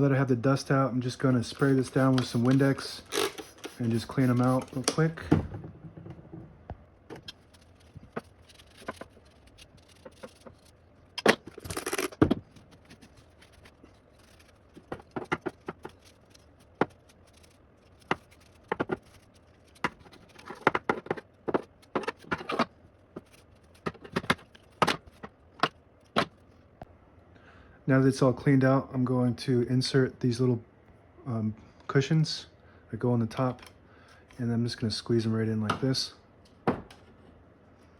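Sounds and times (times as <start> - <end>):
cloth cleaning metal parts: 1.3 - 5.2, 7.1 - 26.3.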